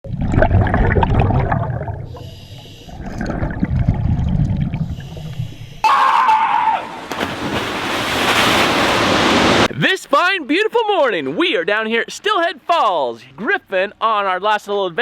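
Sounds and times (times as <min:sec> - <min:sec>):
exhaled bubbles rumbling: 0:00.0 - 0:02.3, 0:02.9 - 0:05.8.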